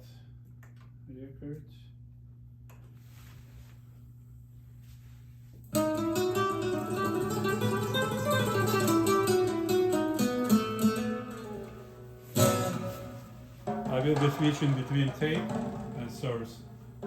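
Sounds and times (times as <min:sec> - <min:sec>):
low steady hum: 0:00.0 - 0:10.2, 0:10.8 - 0:17.0
acoustic guitar music: 0:05.7 - 0:17.0.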